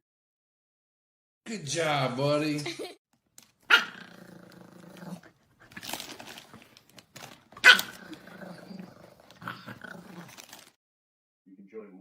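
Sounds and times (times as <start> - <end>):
dog barking: 3.7 - 4.1, 7.6 - 8.0.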